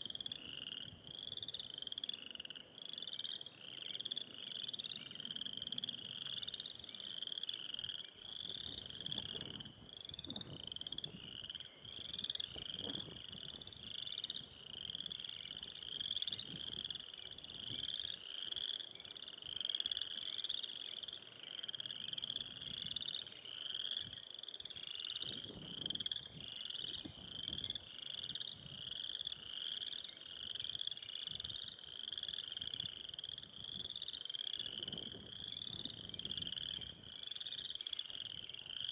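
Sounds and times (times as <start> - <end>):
frogs calling: 0.0 - 38.9
wind rumbling on microphone: 7.7 - 18.2, 25.2 - 29.6, 30.4 - 38.6.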